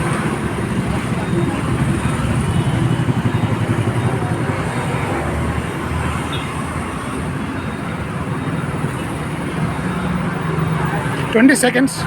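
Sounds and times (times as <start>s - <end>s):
road traffic rumble: 0.0s - 12.0s.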